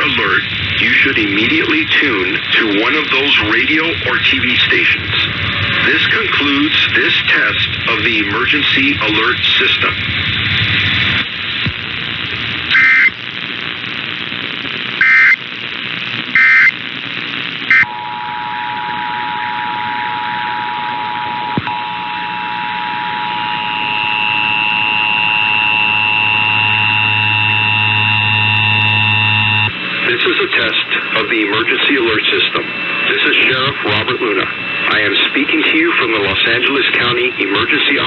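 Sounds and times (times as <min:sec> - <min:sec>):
low hum: 0:00.0 - 0:15.1, 0:15.7 - 0:37.6
radio hiss: 0:00.0 - 0:38.0
warbling data bursts: 0:12.3 - 0:13.2, 0:15.0 - 0:15.4, 0:16.2 - 0:16.7, 0:17.6 - 0:38.0
two-tone attention signal: 0:17.7 - 0:29.7
higher steady tone: 0:17.7 - 0:30.0.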